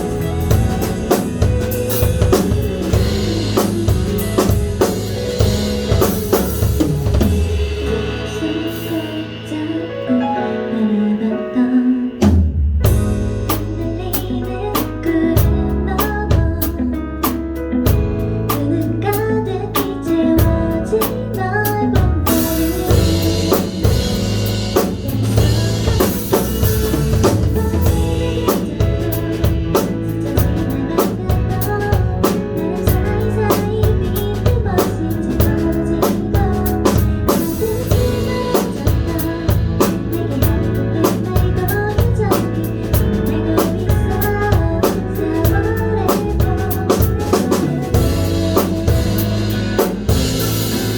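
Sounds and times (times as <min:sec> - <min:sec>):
drum kit beat: 0:00.0 - 0:11.5, 0:12.2 - 0:50.9
live band playing pop ballad: 0:00.0 - 0:50.9.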